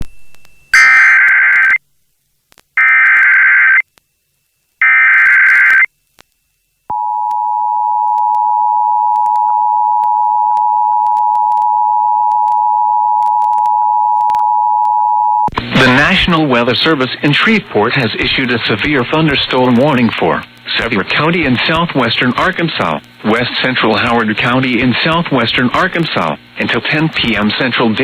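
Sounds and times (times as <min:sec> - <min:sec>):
digital data tone bursts: 0:00.2 - 0:01.8, 0:04.8 - 0:05.9
two-tone attention signal: 0:00.8 - 0:01.8.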